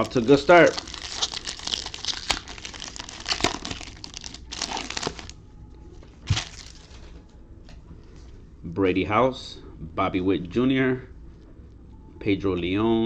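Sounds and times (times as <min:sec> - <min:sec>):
plastic wrapper crinkling: 0:00.0 - 0:05.4, 0:06.2 - 0:07.1.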